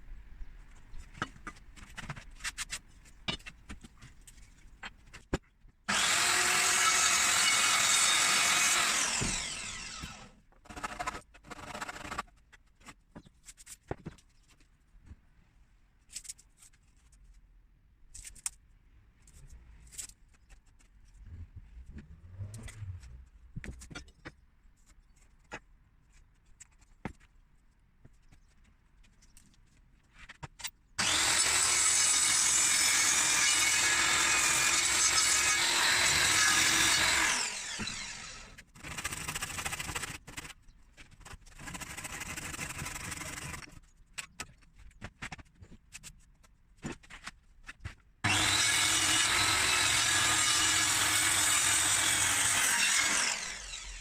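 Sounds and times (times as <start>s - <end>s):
power saw cutting wood: 5.9s - 12.2s, 31.0s - 40.5s, 48.2s - 54.0s.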